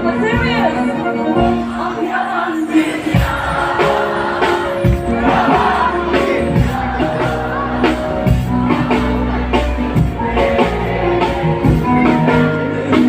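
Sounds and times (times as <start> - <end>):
live band playing: 0.0 - 13.0
person singing: 10.3 - 13.0.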